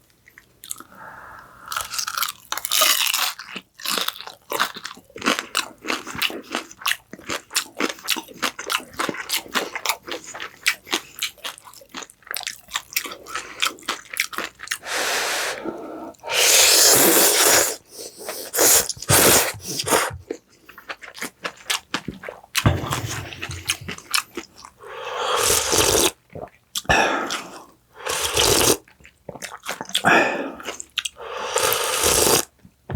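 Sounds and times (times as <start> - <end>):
chewing crisp fried food: 0.1 - 0.9, 1.7 - 15.0, 17.0 - 22.7, 23.5 - 24.8, 25.4 - 32.6.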